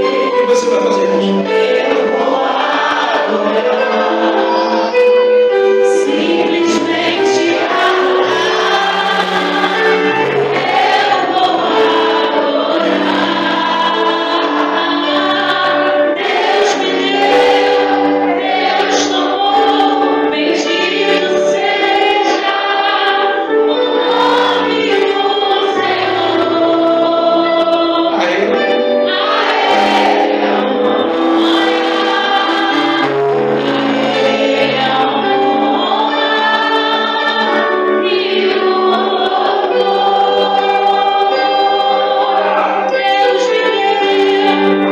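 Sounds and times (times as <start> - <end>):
choir singing worship song: 0.0 - 44.9.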